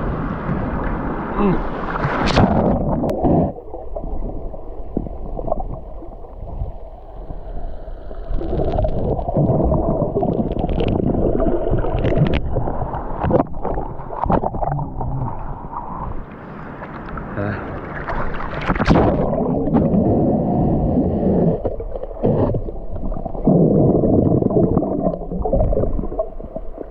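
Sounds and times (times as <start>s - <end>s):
muffled underwater sloshing: 0.0s - 26.9s
water splashes: 0.0s - 26.9s
underwater clicks: 8.4s - 16.0s.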